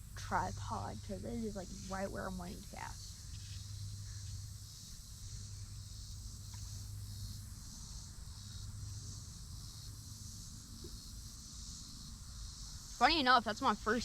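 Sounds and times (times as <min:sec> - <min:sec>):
insects droning: 0:00.0 - 0:14.0
low steady hum: 0:00.0 - 0:14.0.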